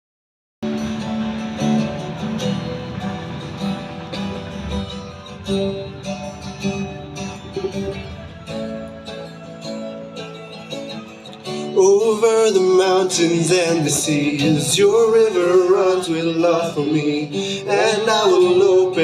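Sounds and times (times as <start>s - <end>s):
acoustic guitar strumming: 0.6s - 19.0s
other instruments playing: 0.7s - 13.0s.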